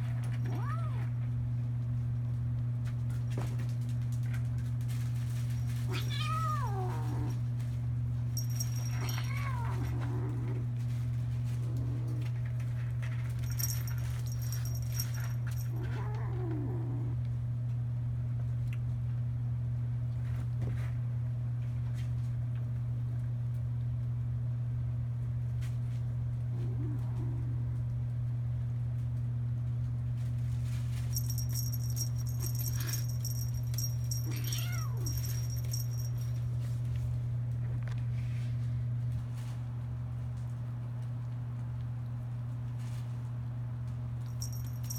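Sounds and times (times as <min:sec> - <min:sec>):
steady low hum: 0:00.0 - 0:44.9
low hum: 0:04.9 - 0:17.7, 0:30.6 - 0:38.3, 0:44.1 - 0:44.9
kitten meowing: 0:05.9 - 0:07.4, 0:34.2 - 0:35.2
small bell jingling: 0:08.4 - 0:09.8, 0:13.4 - 0:15.9, 0:30.9 - 0:36.6, 0:44.2 - 0:44.9.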